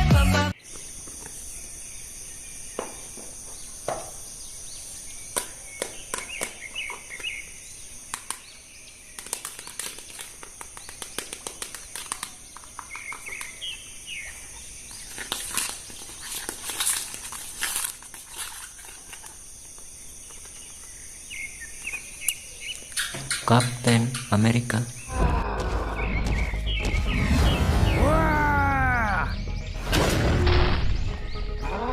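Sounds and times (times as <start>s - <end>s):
bird chirps: 0.6s - 9.9s, 10.7s - 15.2s, 20.2s - 31.9s
plastic packaging crackling: 9.1s - 13.5s, 14.9s - 19.4s.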